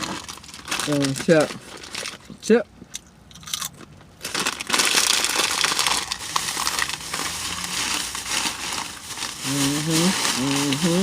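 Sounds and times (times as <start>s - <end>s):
chips crunching: 3.3s - 11.0s.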